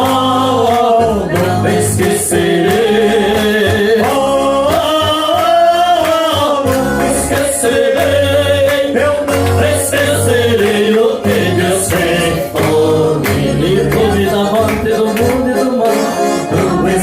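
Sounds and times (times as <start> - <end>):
electronic keyboard accompaniment: 0.0 - 17.0
man singing: 0.0 - 17.0.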